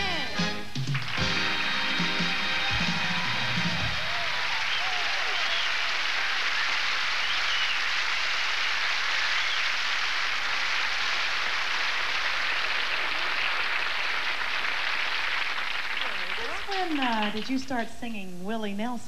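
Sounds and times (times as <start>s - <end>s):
faint cheers: 0.0s - 8.0s
audience applauding: 0.0s - 17.8s.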